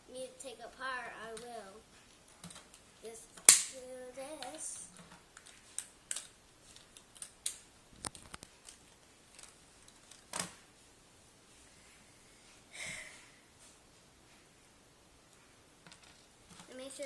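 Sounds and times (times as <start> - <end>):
toy parts clicking and snapping: 3.4 - 3.8, 4.4 - 10.5.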